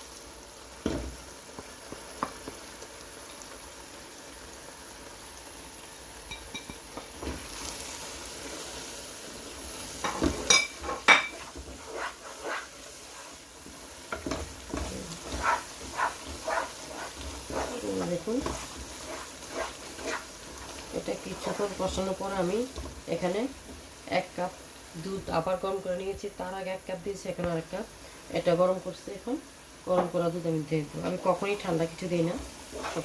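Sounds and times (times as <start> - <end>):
spice mixture sizzling in a pan: 0.0 - 33.0
spoon scraping and clinking on pan: 6.3 - 6.8, 10.0 - 12.7.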